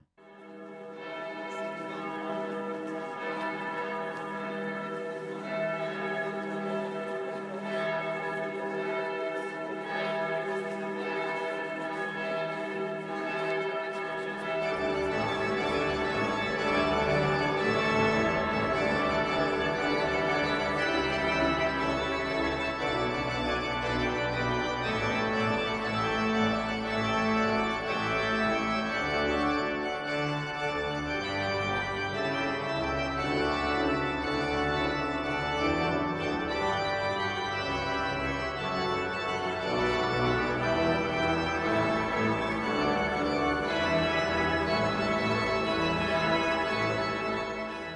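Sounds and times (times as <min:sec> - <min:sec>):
church bells ringing: 0:00.0 - 0:47.9
pipe organ playing sustained chords: 0:00.0 - 0:47.9.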